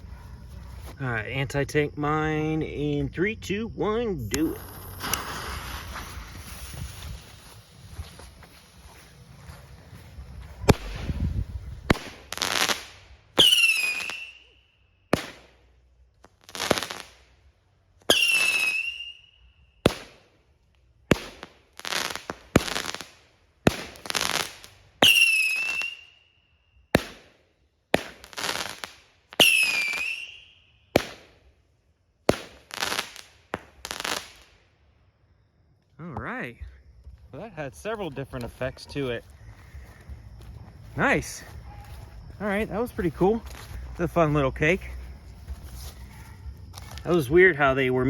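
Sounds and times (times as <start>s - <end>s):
firework shots bursting: 4.5s - 7.2s, 10.6s - 14.4s, 15.1s - 15.6s, 19.8s - 20.3s, 21.0s - 26.0s, 27.0s - 31.4s, 32.2s - 34.5s
firework falling whistle: 4.6s - 7.6s, 13.4s - 14.6s, 18.1s - 19.5s, 25.0s - 26.3s, 29.4s - 31.2s.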